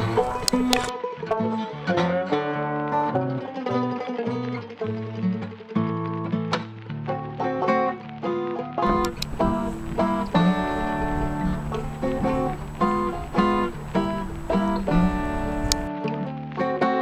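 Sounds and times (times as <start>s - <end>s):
plucked string tune: 8.8s - 15.9s.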